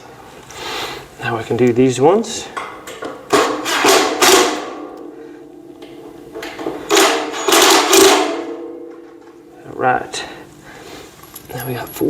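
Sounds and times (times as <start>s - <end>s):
metal ringing: 5.6s - 9.6s.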